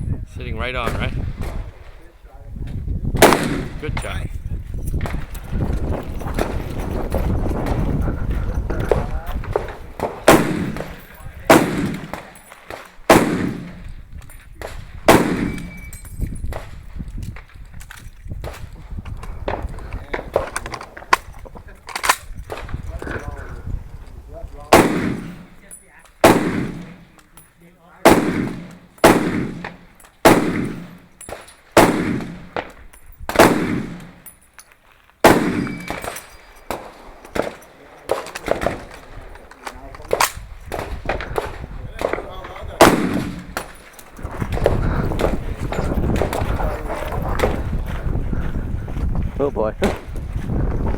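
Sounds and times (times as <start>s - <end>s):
gunshots with echo: 3.2s - 4.2s, 8.7s - 13.9s, 14.6s - 16.8s, 24.7s - 25.6s, 26.2s - 27.2s, 28.0s - 34.2s, 35.2s - 39.4s, 40.1s - 47.6s.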